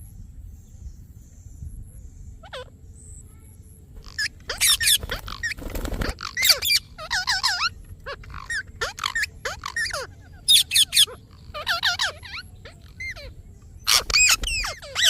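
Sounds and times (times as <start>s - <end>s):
parrot screeching and chirping: 4.0s - 13.3s, 13.9s - 15.0s.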